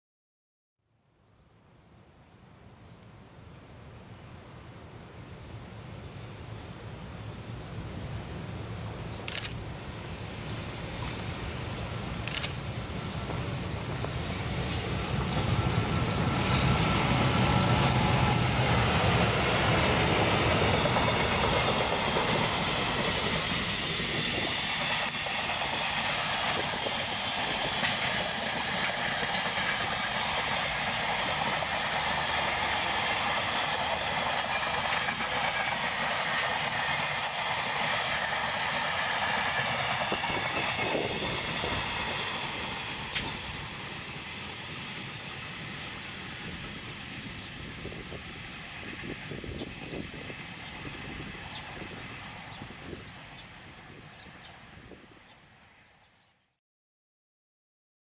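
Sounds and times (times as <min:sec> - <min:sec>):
freight train passing: 0:03.4 - 0:56.5.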